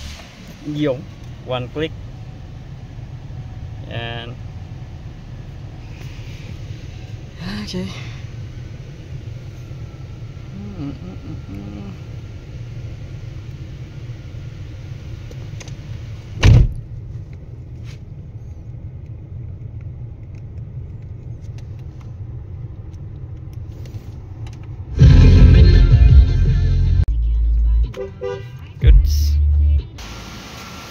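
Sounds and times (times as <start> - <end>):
car engine idling: 0.0 - 29.3
loud thump: 16.4 - 16.8.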